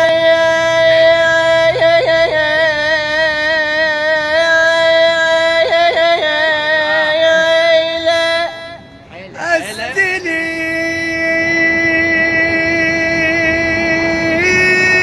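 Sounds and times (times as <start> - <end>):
young man singing with trills: 0.0 - 15.0.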